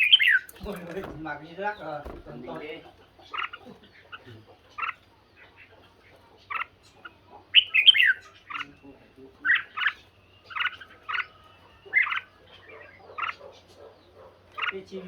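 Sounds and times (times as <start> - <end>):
birds singing chirping phrases: 0.0 - 15.0.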